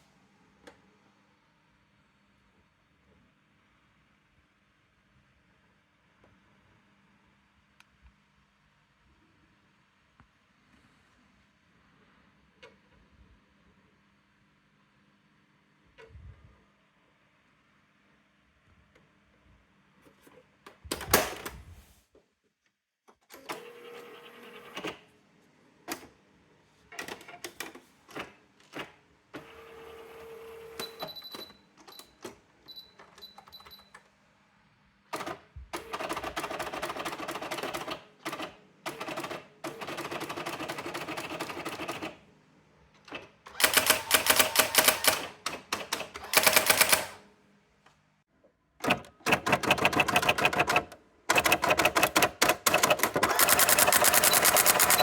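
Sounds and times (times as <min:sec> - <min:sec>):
typewriter clicks: 0:43.1 - 0:47.2, 0:48.8 - 0:55.0
rapid typewriter print strikes: 0:43.6 - 0:47.2, 0:48.8 - 0:55.0
typewriter carriage moving: 0:48.8 - 0:55.0.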